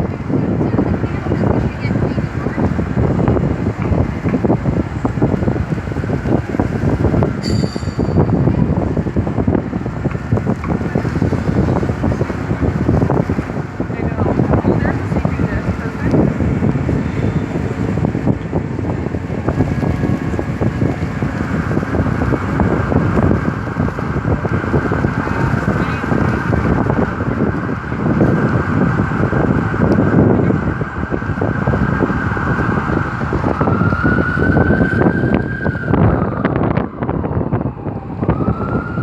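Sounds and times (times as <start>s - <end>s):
street traffic: 0.0s - 39.0s
wind buffeting microphone: 0.0s - 39.0s
siren rising in pitch: 31.0s - 39.0s.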